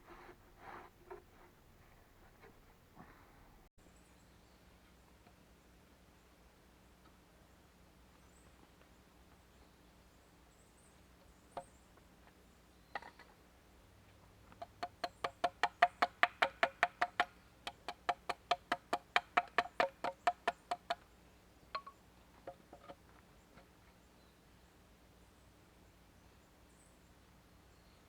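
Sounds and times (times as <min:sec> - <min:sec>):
knocks on wood ringing: 0:21.7 - 0:22.6.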